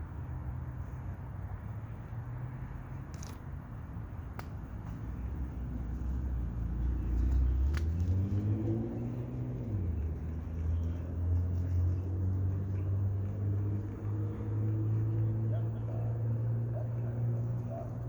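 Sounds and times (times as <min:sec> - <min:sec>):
engine running with low hum: 0:00.0 - 0:18.0.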